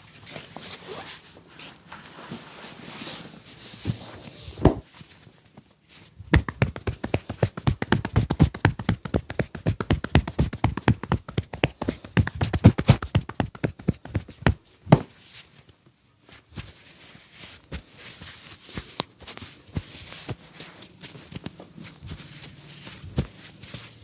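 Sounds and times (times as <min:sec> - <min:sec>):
soft rubbing of skin: 0:05.9 - 0:14.5, 0:15.2 - 0:24.0
hands slapping skin: 0:06.3 - 0:14.6.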